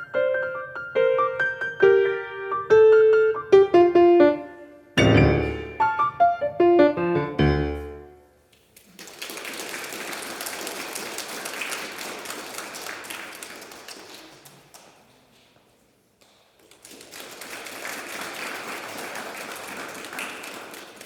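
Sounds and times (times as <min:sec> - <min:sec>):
acoustic piano: 0:00.0 - 0:08.4
audience applauding: 0:08.8 - 0:15.0, 0:16.6 - 0:21.0.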